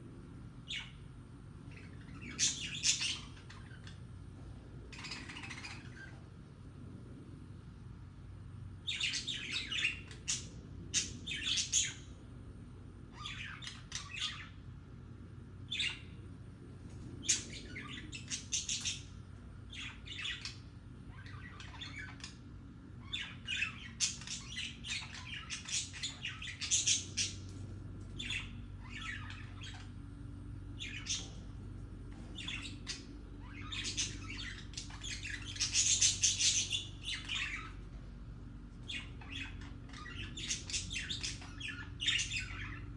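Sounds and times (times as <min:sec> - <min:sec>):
budgerigars chattering: 0:04.9 - 0:06.1, 0:17.2 - 0:19.1, 0:23.1 - 0:27.5, 0:30.8 - 0:31.5, 0:32.2 - 0:37.8, 0:38.8 - 0:42.9.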